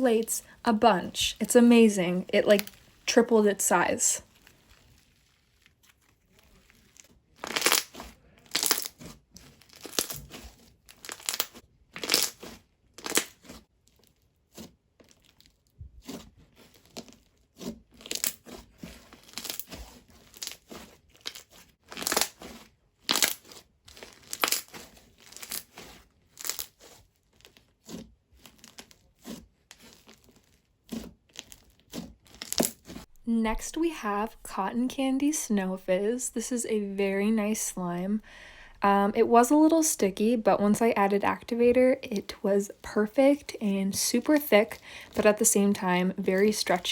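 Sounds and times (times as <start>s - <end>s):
slime squished with crackly pops: 4.3s - 33.1s.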